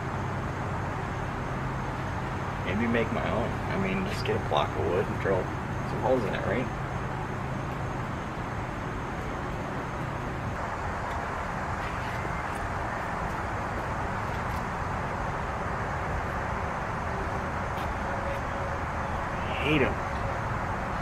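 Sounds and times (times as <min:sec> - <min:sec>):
outdoor background noise: 0:00.0 - 0:21.0.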